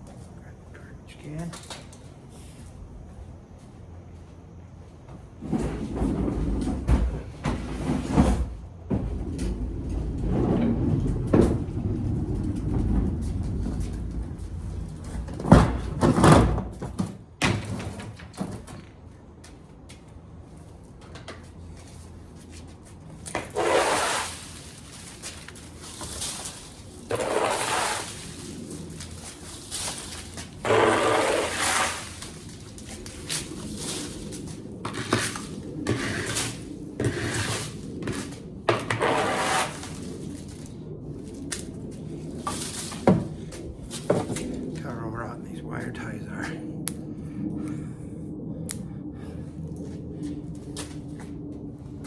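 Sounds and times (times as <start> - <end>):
handling rustling and scraping: 21.3 - 44.8.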